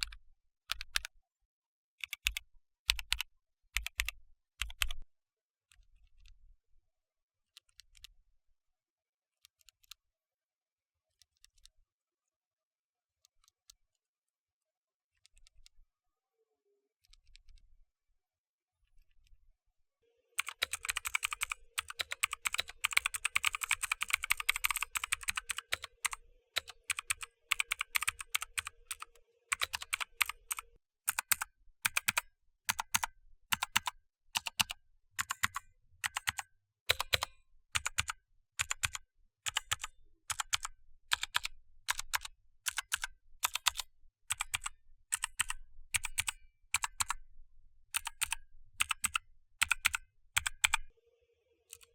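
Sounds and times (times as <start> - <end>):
clicky mechanical keyboard typing: 2.0 - 5.0, 20.4 - 47.2, 47.9 - 50.9.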